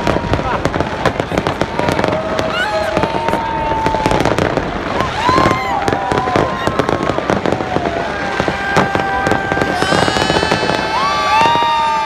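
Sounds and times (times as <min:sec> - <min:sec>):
fireworks crackling and banging: 0:00.0 - 0:12.0
high whistling tones: 0:09.7 - 0:12.0.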